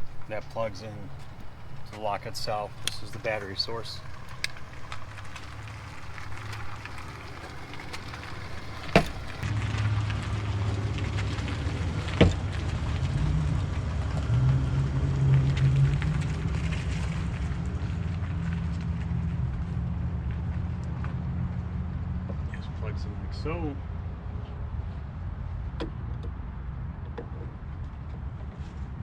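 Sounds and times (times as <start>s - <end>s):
sharp clicks: 0.0s - 9.4s
low humming rumble: 0.0s - 11.2s.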